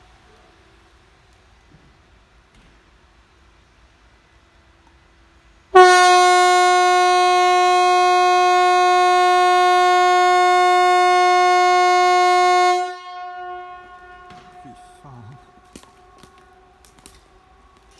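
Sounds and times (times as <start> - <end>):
warning siren steady tone: 5.8 - 16.8.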